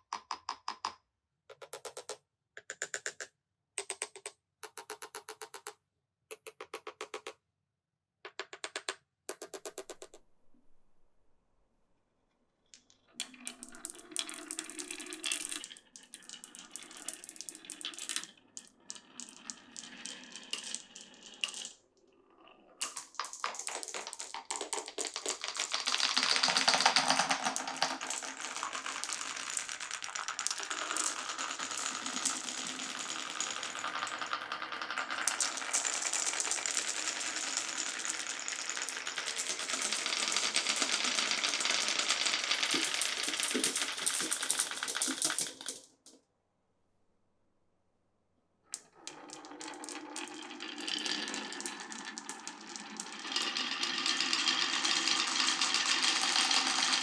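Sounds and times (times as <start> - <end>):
marbles clattering through wooden run: 12.8 - 21.8, 22.4 - 45.9, 48.7 - 57.0.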